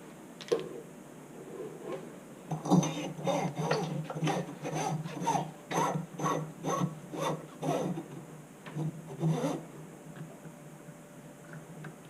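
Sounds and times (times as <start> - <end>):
steady low hum: 0.0 - 12.0
hand tool rasping: 2.6 - 8.2, 9.2 - 9.6.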